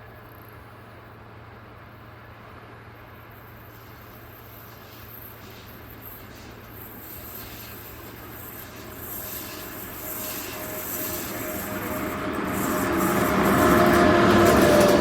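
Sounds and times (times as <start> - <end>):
electric train running on rails: 0.0 - 15.0
thin steady high tone: 4.1 - 15.0.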